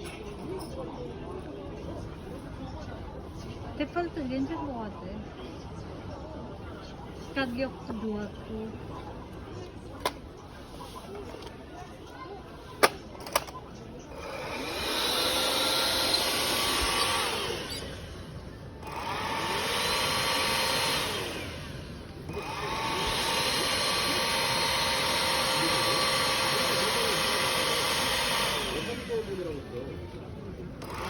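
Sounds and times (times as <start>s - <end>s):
vacuum cleaner motor whining: 14.1s - 30.2s, 30.8s - 31.0s.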